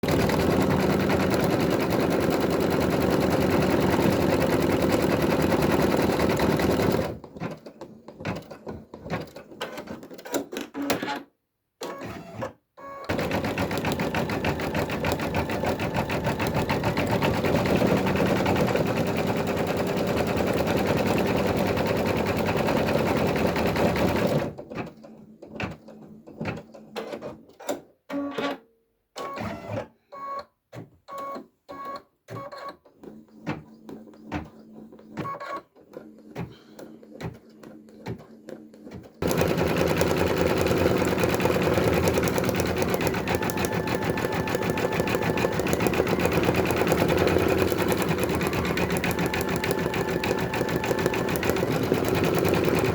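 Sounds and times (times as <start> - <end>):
embroidery machine stitching: 0.0 - 7.7, 13.1 - 24.7, 39.2 - 52.9.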